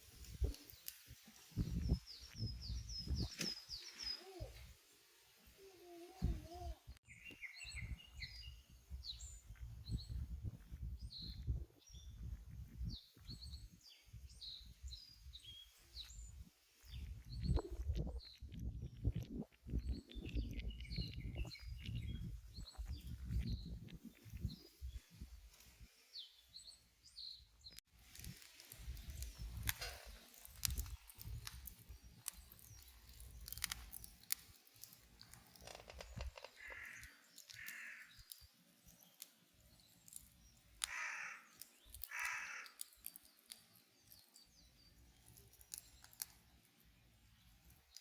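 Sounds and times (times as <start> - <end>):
small birds chirping: 0.0 - 48.0
crow cawing: 36.6 - 38.1, 40.8 - 42.8.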